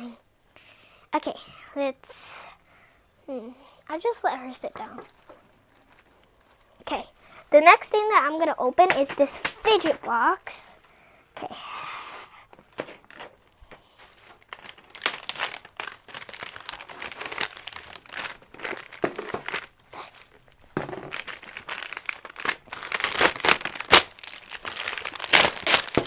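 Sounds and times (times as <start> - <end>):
packaging crinkling and rustling: 4.8 - 7.2, 12.5 - 26.0.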